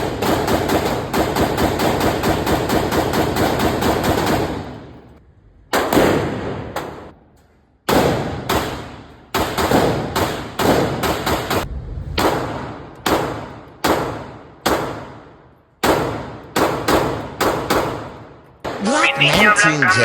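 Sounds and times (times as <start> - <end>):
rapid gunshots: 0.0 - 5.0, 7.9 - 18.8.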